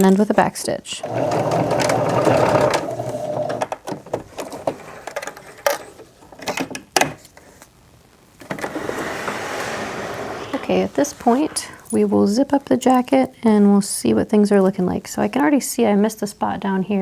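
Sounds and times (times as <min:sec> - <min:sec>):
sewing machine stitching: 0:01.0 - 0:03.7
handling clicks and knocks: 0:01.3 - 0:07.4
fabric rustling: 0:07.2 - 0:12.1.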